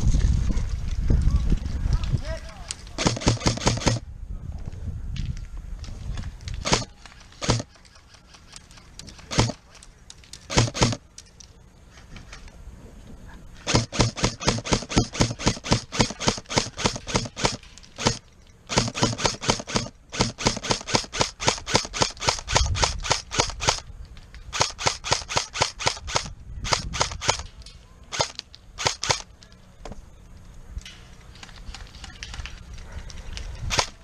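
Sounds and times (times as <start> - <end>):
airsoft gun rapid shots: 3.0 - 4.0, 6.6 - 9.6, 10.5 - 11.0, 13.6 - 23.8, 24.5 - 27.4, 28.1 - 29.3.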